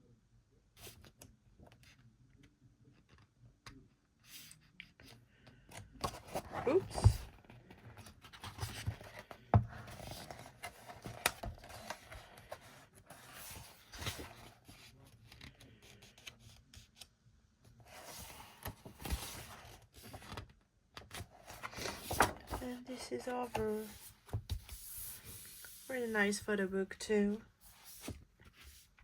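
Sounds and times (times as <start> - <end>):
book pages turning: 4.4 - 17.1, 17.8 - 26.4, 27.6 - 29.0.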